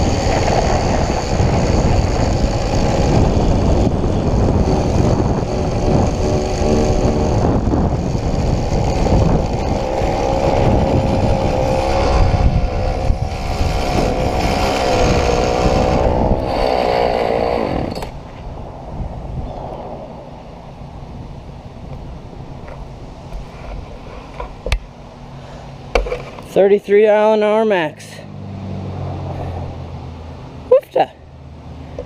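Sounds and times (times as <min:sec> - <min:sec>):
two-stroke engine running hard: 0:00.0 - 0:18.2
wind rumble on microphone: 0:00.0 - 0:24.8.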